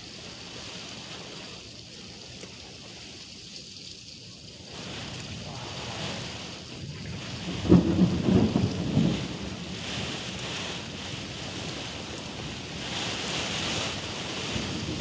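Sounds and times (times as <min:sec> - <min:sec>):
heavy rain falling: 0:00.0 - 0:02.0, 0:04.3 - 0:15.0
thunder clap rumbling: 0:04.7 - 0:15.0.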